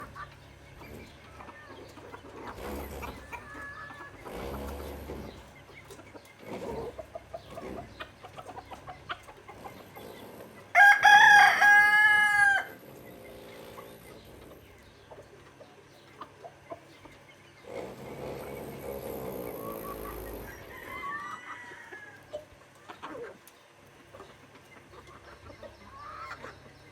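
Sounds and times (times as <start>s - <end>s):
chickens clucking: 0.0s - 26.9s
rooster crowing: 10.7s - 12.8s, 20.4s - 22.4s.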